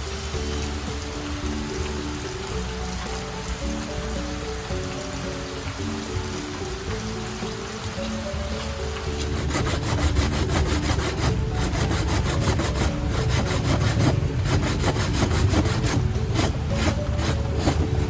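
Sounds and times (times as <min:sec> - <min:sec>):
soft background music: 0:00.0 - 0:18.0
rhythmic scraping strokes: 0:09.1 - 0:18.0.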